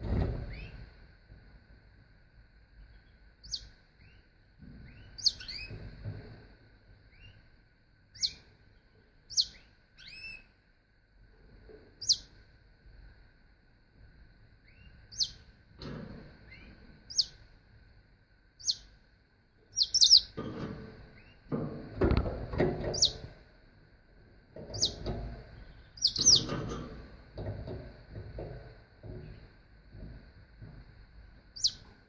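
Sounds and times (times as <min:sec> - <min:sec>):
canary chirping: 0:00.5 - 0:00.8, 0:03.0 - 0:04.2, 0:04.8 - 0:05.9, 0:07.1 - 0:07.4, 0:08.1 - 0:08.5, 0:09.3 - 0:10.6, 0:12.0 - 0:12.4, 0:14.6 - 0:15.5, 0:16.4 - 0:17.4, 0:18.6 - 0:19.0, 0:19.7 - 0:21.6, 0:22.2 - 0:23.3, 0:24.6 - 0:27.0, 0:31.5 - 0:31.9.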